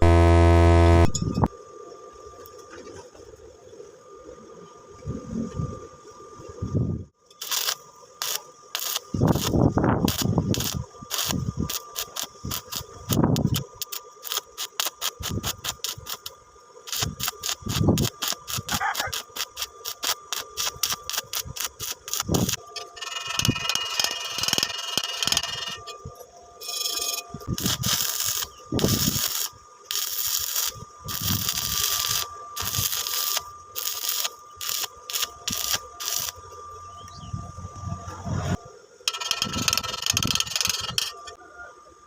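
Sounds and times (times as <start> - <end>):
arc welding crackle: 0.0 - 1.2, 7.3 - 25.9, 26.7 - 36.6, 39.1 - 41.2
faint steady whine: 0.0 - 42.0.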